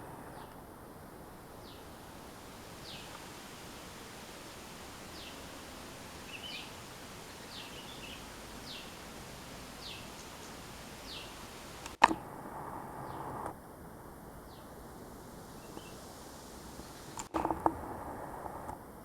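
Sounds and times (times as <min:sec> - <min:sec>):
bird calling: 0:00.0 - 0:12.0, 0:15.5 - 0:16.1
outdoor background noise: 0:00.0 - 0:19.0
loud sharp click: 0:11.8 - 0:12.2.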